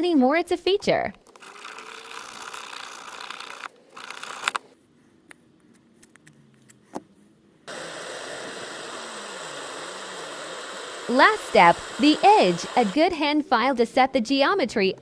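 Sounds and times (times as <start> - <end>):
rotary tool grinding steel blade: 1.3 - 4.6.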